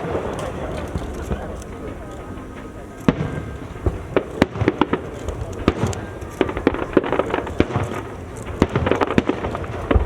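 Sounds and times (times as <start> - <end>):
fireworks bangs and pops: 0.0 - 10.0.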